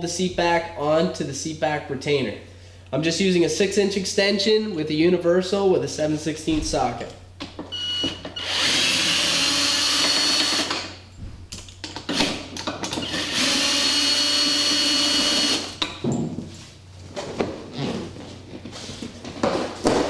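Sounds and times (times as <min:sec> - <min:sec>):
power drill whirring: 0:07.8 - 0:11.0, 0:12.1 - 0:15.8.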